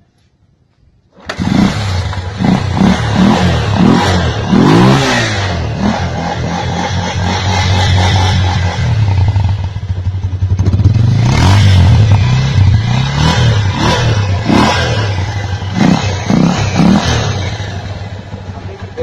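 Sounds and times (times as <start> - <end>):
motorcycle engine revving: 1.1 - 19.0.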